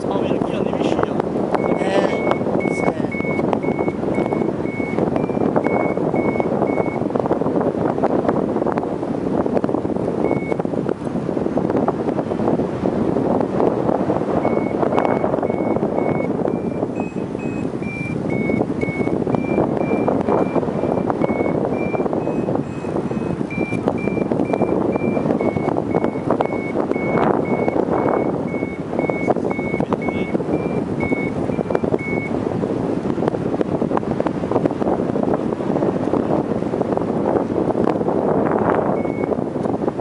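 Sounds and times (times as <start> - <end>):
wind rushing over microphone: 0.0 - 40.0
variometer high beeps: 1.5 - 7.1, 10.2 - 10.7, 14.4 - 32.4, 38.9 - 39.4.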